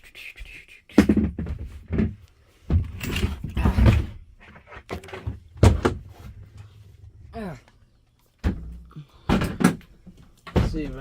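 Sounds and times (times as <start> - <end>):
hard thuds and knocks: 1.0 - 4.3, 4.9 - 6.2, 8.4 - 11.0
rattling and scraping: 1.3 - 7.3.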